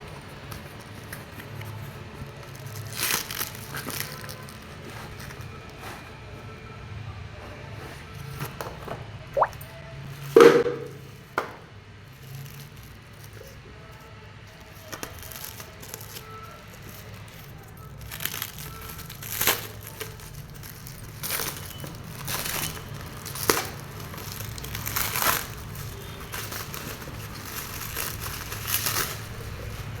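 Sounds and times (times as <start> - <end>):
packaging crinkling: 0.1 - 5.4, 14.7 - 30.0.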